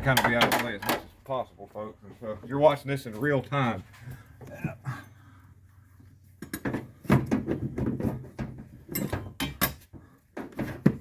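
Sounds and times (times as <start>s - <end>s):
tools and parts clinking: 0.0s - 1.1s, 6.4s - 10.0s.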